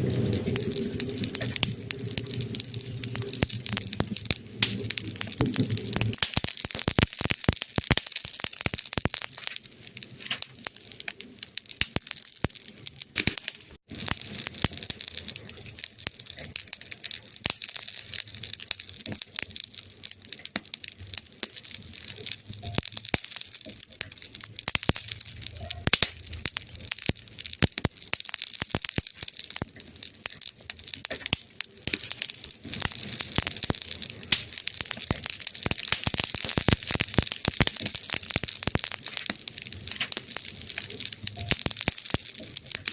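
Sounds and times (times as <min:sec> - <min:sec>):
campfire crackling and popping: 0:00.0 - 0:42.9.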